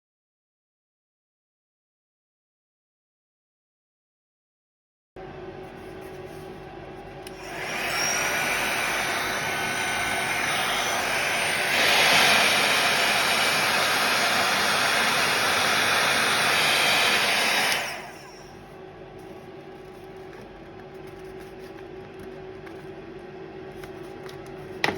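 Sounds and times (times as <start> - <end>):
hot air brush blowing: 7.2 - 18.6.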